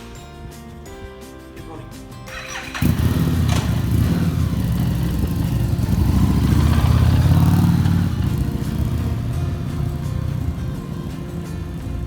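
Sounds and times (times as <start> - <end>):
motorcycle engine low rumble: 2.4 - 12.0.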